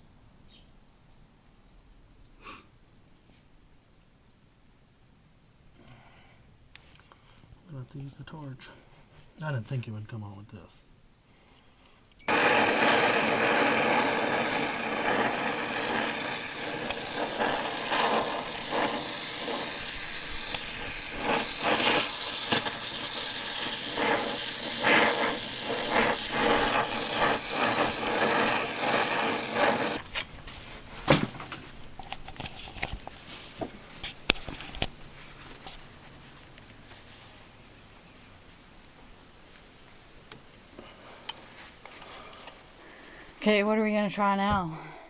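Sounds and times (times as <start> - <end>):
power tool motor grinding: 12.3 - 30.6.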